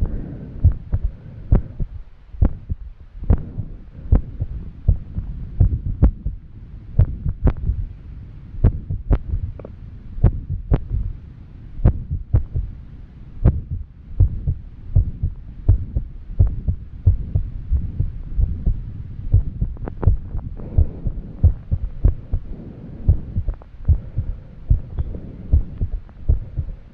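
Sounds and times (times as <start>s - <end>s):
heavy breathing: 0.0s - 2.0s, 20.5s - 26.9s
fast irregular heartbeat: 0.0s - 6.4s, 7.0s - 8.0s, 8.6s - 11.2s, 11.8s - 12.7s, 13.4s - 26.8s.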